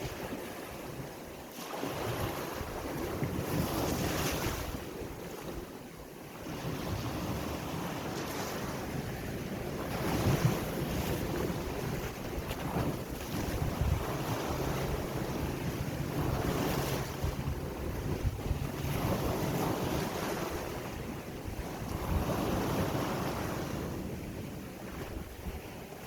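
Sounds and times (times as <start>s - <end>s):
ocean waves breaking: 0.0s - 26.0s
wind rumbling on microphone: 0.0s - 26.0s.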